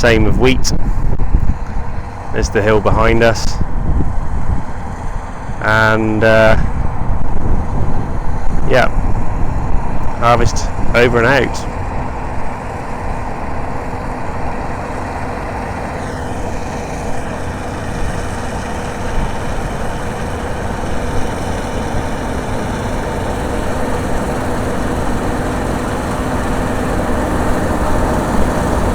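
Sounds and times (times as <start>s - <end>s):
combine harvester running: 0.0s - 28.9s.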